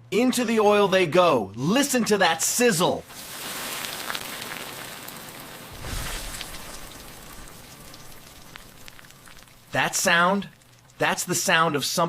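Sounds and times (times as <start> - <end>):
okra deep-frying in hot oil: 3.0 - 12.0.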